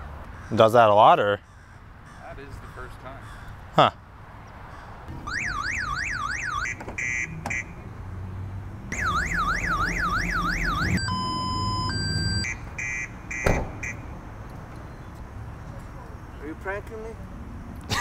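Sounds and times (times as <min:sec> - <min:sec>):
car alarm from speaker: 0:05.3 - 0:07.7, 0:08.9 - 0:14.0.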